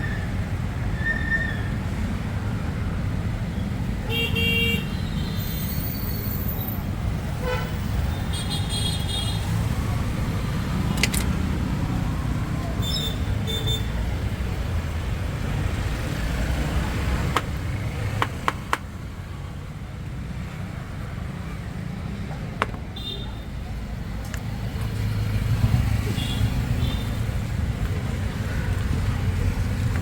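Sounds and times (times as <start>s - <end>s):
street traffic rumble: 0.0s - 30.0s
sharp clicks or knocks: 10.9s - 11.4s, 17.2s - 18.9s.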